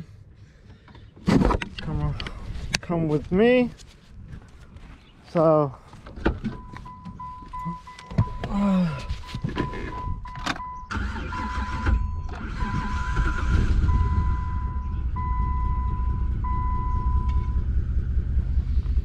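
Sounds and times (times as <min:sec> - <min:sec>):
engine low rumble: 0:00.0 - 0:19.0
car engine cranking and starting: 0:06.0 - 0:19.0
vehicle warning chime beeping: 0:06.5 - 0:17.7.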